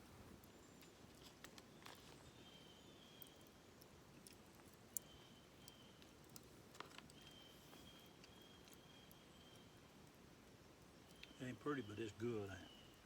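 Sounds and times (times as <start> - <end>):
faint small clicks: 3.2 - 9.2, 11.0 - 11.4.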